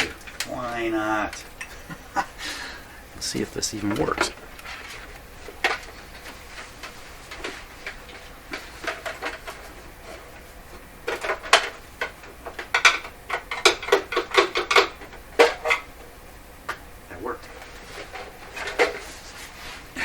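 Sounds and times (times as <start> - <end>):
radio chassis knocks and clicks: 3.6 - 9.7.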